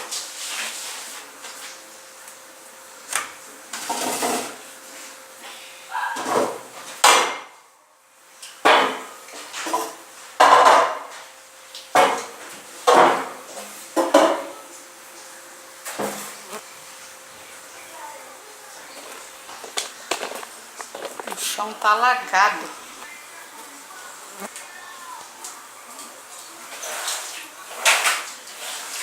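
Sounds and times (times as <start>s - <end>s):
wet floor cleaning strokes: 0.0s - 2.0s, 16.1s - 29.0s.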